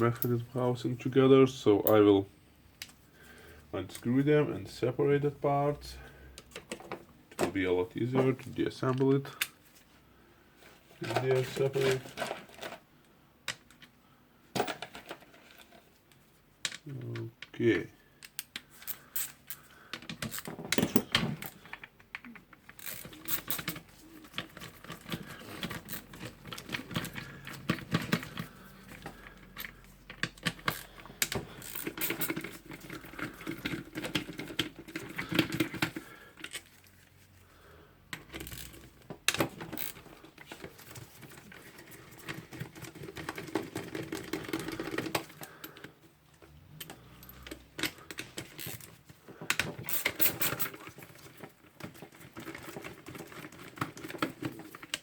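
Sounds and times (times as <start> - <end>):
clicks taps and rattles of unscrewing: 18.2 - 36.8.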